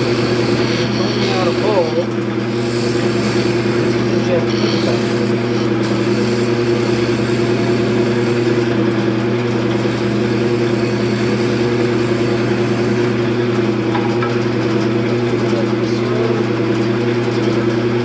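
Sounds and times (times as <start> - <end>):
tool cutting wood hiss: 0.0 - 8.8, 9.7 - 13.2
lathe motor hum: 0.0 - 18.0.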